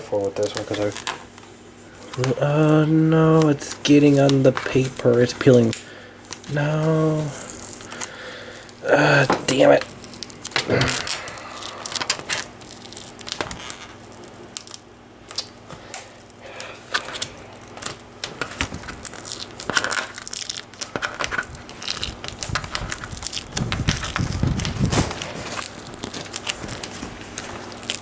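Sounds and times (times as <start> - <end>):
tape peeling off plastic: 9.5 - 28.0.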